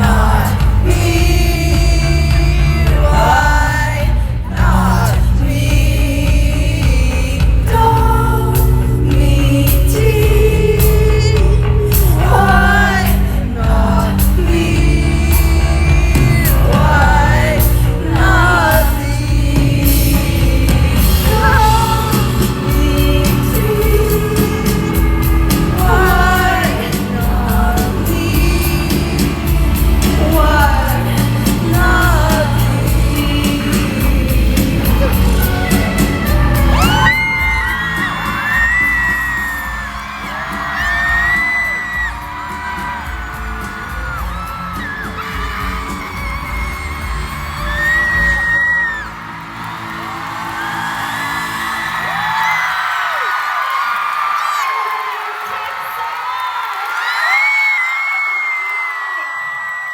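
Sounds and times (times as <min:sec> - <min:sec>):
heavy bass line: 0:00.0 - 0:48.6
woman singing lead: 0:00.0 - 0:49.4
live rock band: 0:00.0 - 0:52.7
audience cries and whoops: 0:10.2 - 0:59.9.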